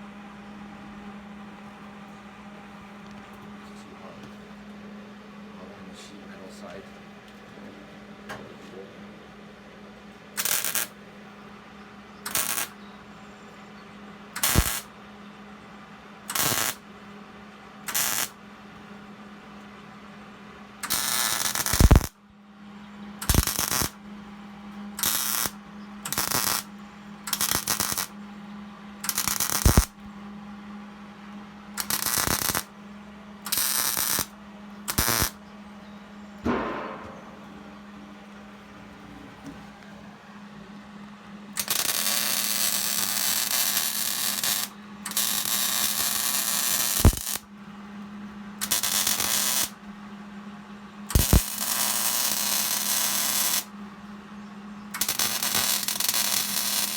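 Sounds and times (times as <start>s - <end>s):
steady low hum: 0.0s - 56.9s
electric arc welding bursts: 10.4s - 11.0s, 12.3s - 12.8s, 14.4s - 14.9s, 16.3s - 16.8s, 17.9s - 18.4s, 20.8s - 22.2s, 23.2s - 24.0s, 25.0s - 26.7s, 27.3s - 28.2s, 29.1s - 30.0s, 31.8s - 32.7s, 33.5s - 35.4s, 41.6s - 47.4s, 48.6s - 49.8s, 51.1s - 53.7s, 55.0s - 56.9s.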